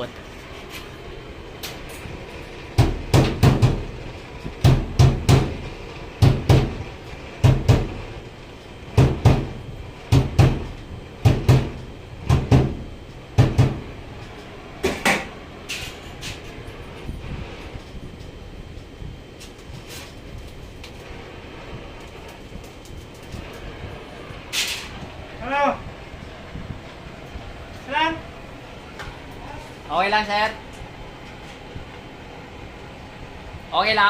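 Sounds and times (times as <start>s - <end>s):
heavy knocks: 2.8s - 3.9s, 4.6s - 5.6s, 7.4s - 8.0s, 8.9s - 13.9s.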